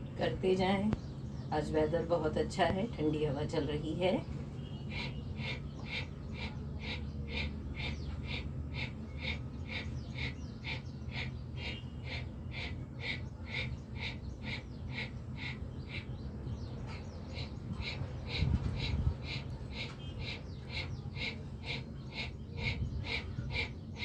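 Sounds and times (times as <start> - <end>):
rapid forceful nose breathing: 4.9 - 24.0.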